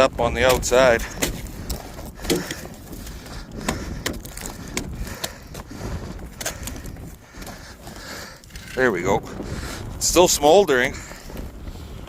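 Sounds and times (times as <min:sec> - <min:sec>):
ice cracking: 0:00.0 - 0:05.6.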